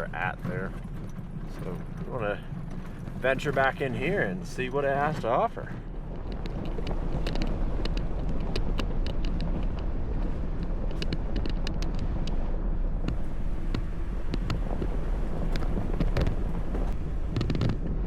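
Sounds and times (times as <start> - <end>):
vehicle engine low rumble: 0.0 - 18.0
sharp clicks and knocks: 4.9 - 12.4, 13.0 - 18.0.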